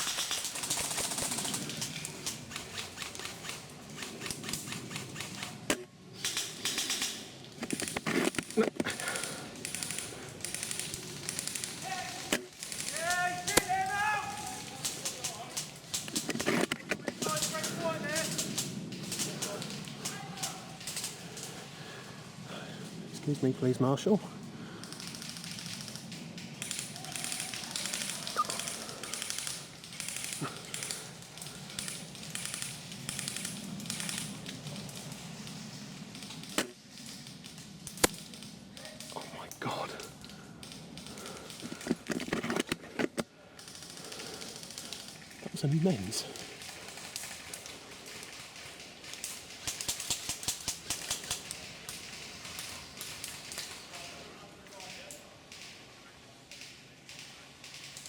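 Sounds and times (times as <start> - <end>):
rapid airsoft gunfire: 0.0 - 16.6, 24.9 - 31.1, 46.5 - 53.6
rapid sharp clicks: 0.0 - 22.1, 24.7 - 58.0
faint outdoor hiss: 0.0 - 58.0.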